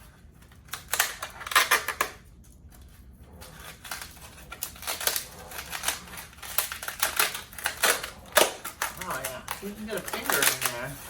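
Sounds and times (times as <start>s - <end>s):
dry gourd skin cracking: 0.5s - 2.3s, 3.4s - 11.0s.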